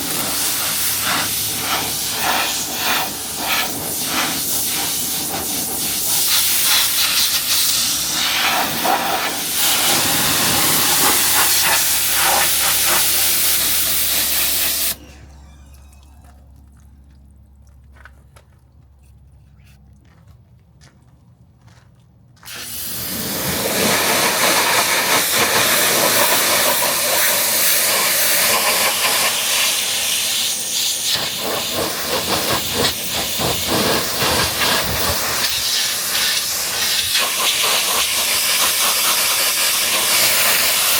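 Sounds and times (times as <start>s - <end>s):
pressure washer spraying: 0.0s - 15.0s, 22.5s - 40.9s
faint water drips: 16.0s - 18.9s.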